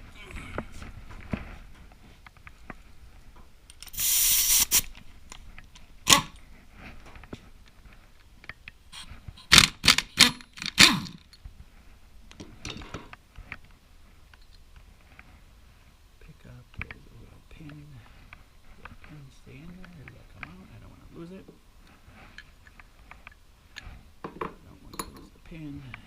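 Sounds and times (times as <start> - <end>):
short hiss: 3.8 - 5.0
tools and metal parts clinking: 24.4 - 25.3.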